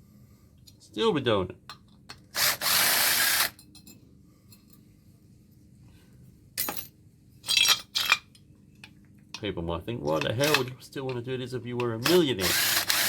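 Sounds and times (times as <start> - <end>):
power drill whirring: 2.4 - 3.6, 12.4 - 13.0.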